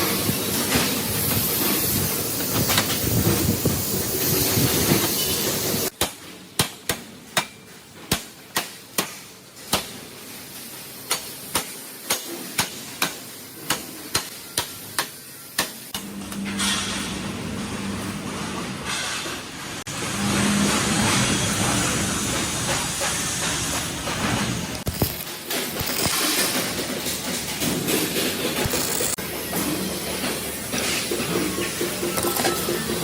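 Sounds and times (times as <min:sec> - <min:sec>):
loud workshop noise: 0:00.0 - 0:33.0
hammer striking metal: 0:11.1 - 0:17.2
steady machine hum: 0:19.9 - 0:25.0.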